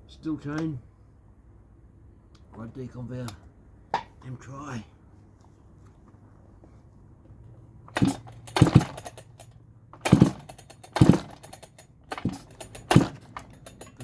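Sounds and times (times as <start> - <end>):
chainsaw starter rope pulls: 7.9 - 14.0.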